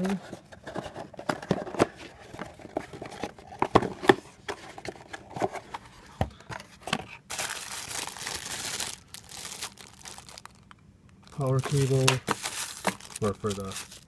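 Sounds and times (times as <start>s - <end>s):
packaging crinkling: 7.3s - 14.0s.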